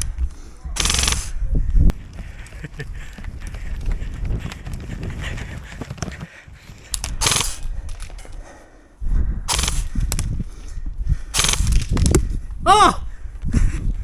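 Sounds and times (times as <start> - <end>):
short hissy bursts: 7.2 - 7.7, 9.5 - 10.0.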